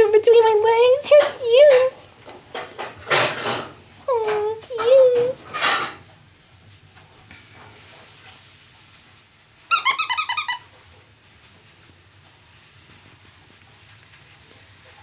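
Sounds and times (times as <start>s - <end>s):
squeaky pet toy squeaking: 9.7s - 10.7s.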